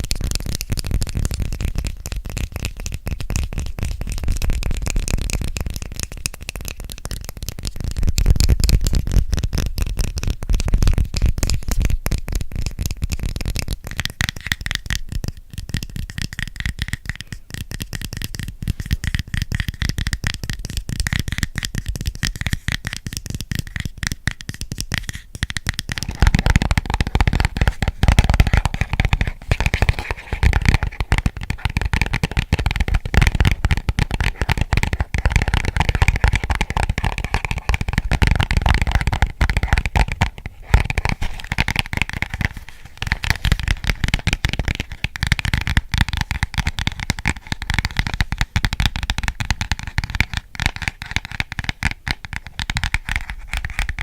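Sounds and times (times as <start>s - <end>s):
fast finger tapping: 0.0s - 54.0s.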